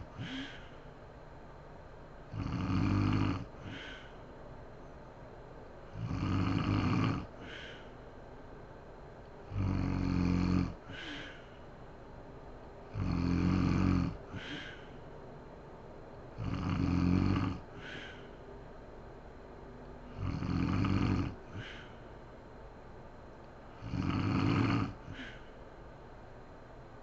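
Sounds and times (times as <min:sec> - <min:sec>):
woman snoring loudly: 0:00.0 - 0:00.6, 0:02.3 - 0:04.0, 0:06.0 - 0:07.6, 0:09.5 - 0:11.2, 0:12.9 - 0:14.7, 0:16.4 - 0:18.2, 0:20.1 - 0:21.8, 0:23.8 - 0:25.3
breathy puff of air: 0:00.0 - 0:00.9, 0:03.6 - 0:04.3, 0:07.4 - 0:08.0, 0:10.8 - 0:11.7, 0:14.3 - 0:15.1, 0:17.7 - 0:18.4, 0:21.5 - 0:22.2, 0:25.0 - 0:25.6.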